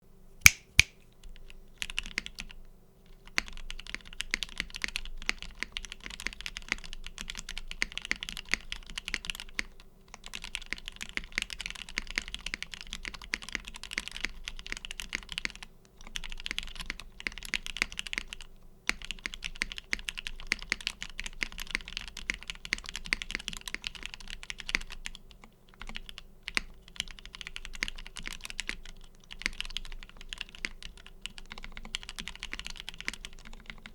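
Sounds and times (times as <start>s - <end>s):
mechanical keyboard typing: 1.8s - 2.6s, 3.2s - 33.9s.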